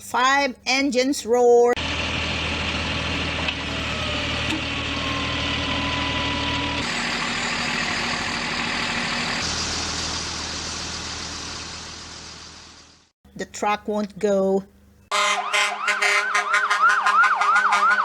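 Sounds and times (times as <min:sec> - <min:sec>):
vehicle engines running: 0:01.8 - 0:13.1.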